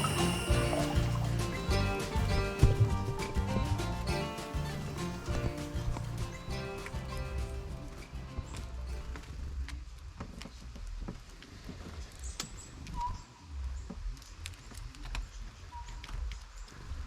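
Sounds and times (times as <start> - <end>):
short bird chirps: 0.0 - 1.4.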